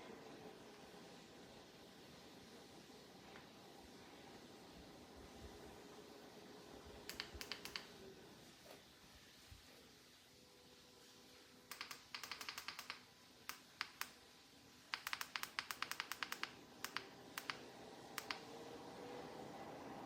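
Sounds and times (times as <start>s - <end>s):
quick sharp clicks: 7.1s - 8.0s, 11.7s - 14.2s, 14.9s - 18.5s.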